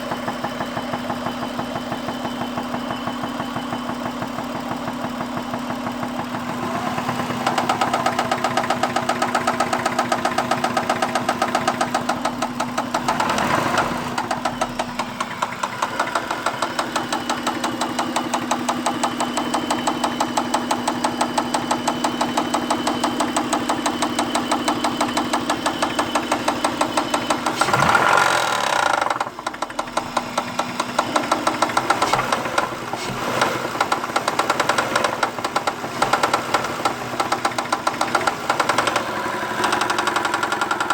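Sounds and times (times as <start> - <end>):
car engine humming: 0.0 - 40.9
rapid engine ticking: 0.0 - 40.9.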